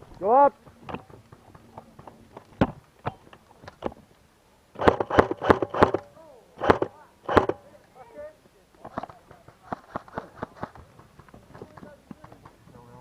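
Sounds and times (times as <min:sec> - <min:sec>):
airsoft gun shots: 0:04.8 - 0:06.0, 0:06.6 - 0:07.6.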